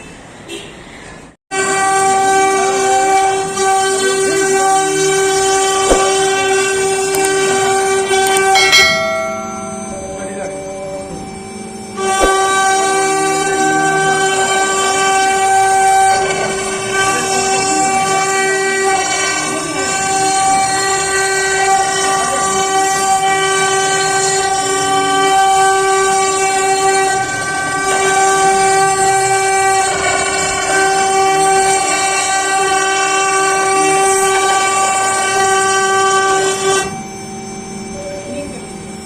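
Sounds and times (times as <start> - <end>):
bit cutting wood: 1.6 - 10.6, 12.0 - 37.0
router spindle whine: 1.6 - 39.0.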